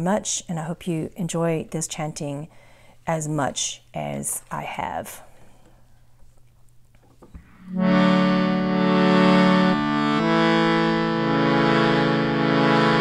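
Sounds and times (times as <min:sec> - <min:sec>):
sustained reed instrument chords: 0:07.6 - 0:13.0.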